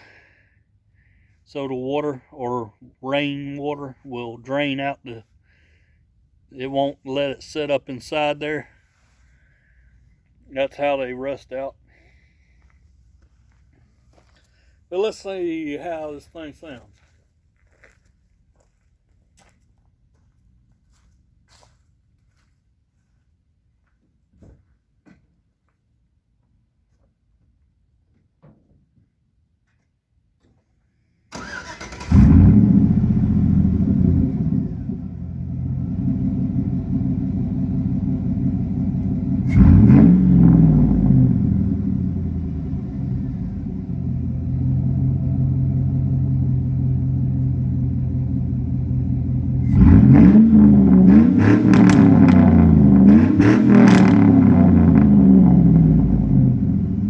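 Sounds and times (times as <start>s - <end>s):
car engine starting and revving: 31.3s - 57.0s.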